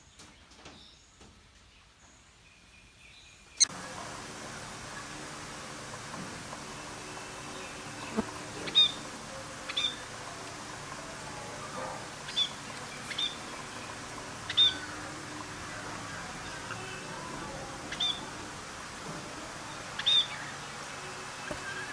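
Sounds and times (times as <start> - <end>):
bird chirping: 6.8 - 18.4, 19.6 - 21.9.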